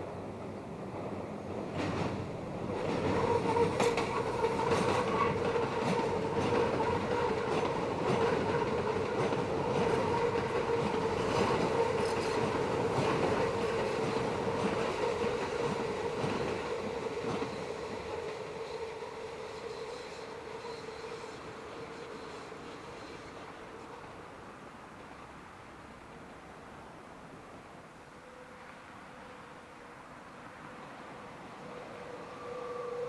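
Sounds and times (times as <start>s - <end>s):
train wheels rumbling on rails: 0.0s - 25.6s
train wheels squealing: 1.8s - 24.4s, 30.6s - 33.0s.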